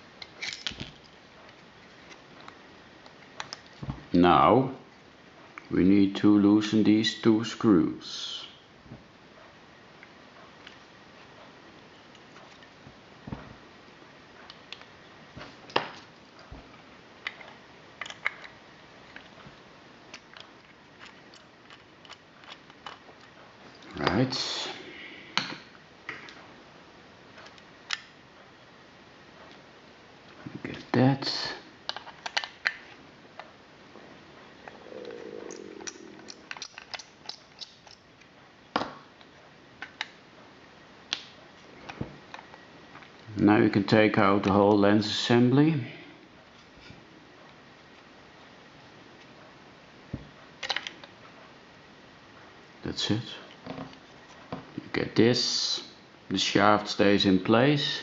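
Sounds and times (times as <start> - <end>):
small plastic parts clicking: 17.2 - 19.3, 20.1 - 23.9, 31.9 - 32.9, 35.5 - 38.3, 50.6 - 51.2.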